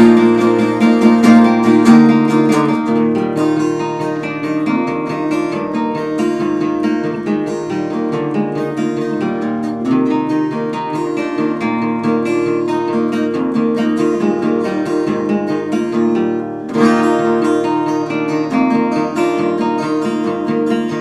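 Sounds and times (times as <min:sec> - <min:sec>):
acoustic guitar strumming: 0:00.0 - 0:21.0.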